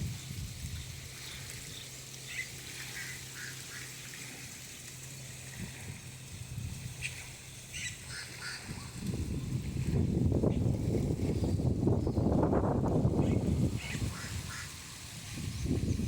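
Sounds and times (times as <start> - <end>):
birds chirping: 0.2 - 4.3, 7.0 - 9.7, 10.5 - 16.0.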